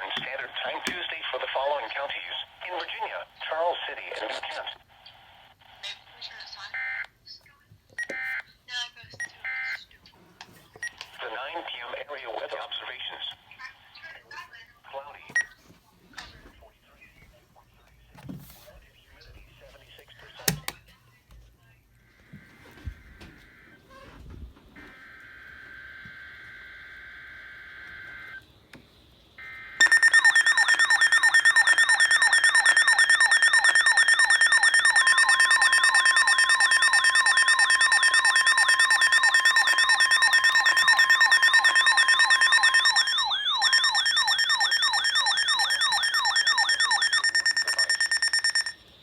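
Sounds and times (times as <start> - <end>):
warbling siren alarm: 29.4 - 48.8
steady alert tone: 29.8 - 48.8.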